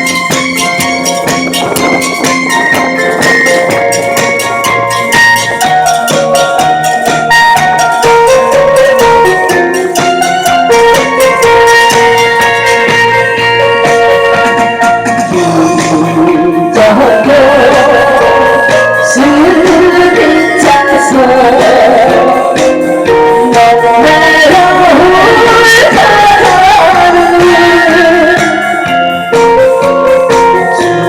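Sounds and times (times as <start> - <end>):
instrumental backing track: 0.0 - 31.0
woman singing: 15.3 - 28.8, 30.0 - 31.0.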